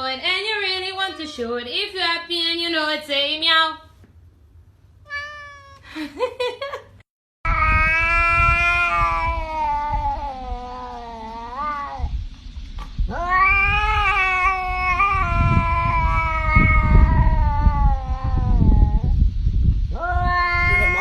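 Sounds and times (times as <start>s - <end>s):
cat yowling: 5.1s - 5.9s, 7.5s - 12.1s, 13.1s - 19.1s, 20.0s - 21.0s
low rumbling noise: 7.5s - 21.0s.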